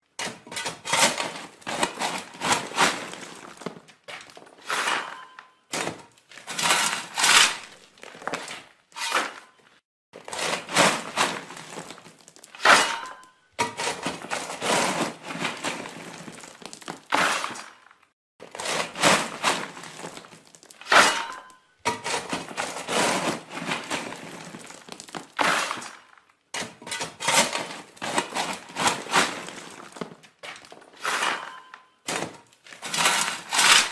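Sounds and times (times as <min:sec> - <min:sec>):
shovel digging into earth: 0:04.6 - 0:07.8, 0:09.0 - 0:09.4, 0:17.0 - 0:17.8, 0:20.8 - 0:26.0, 0:31.0 - 0:33.9.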